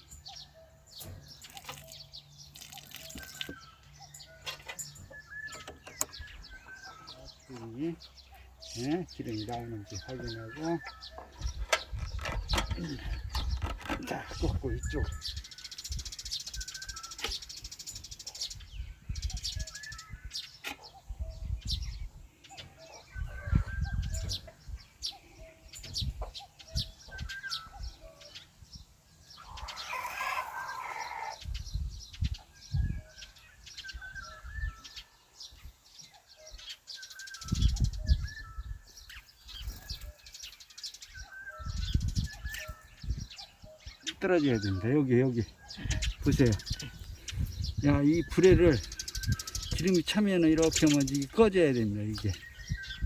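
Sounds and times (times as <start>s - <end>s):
birds chirping: 0.0s - 53.0s
harsh bird call: 29.4s - 31.5s.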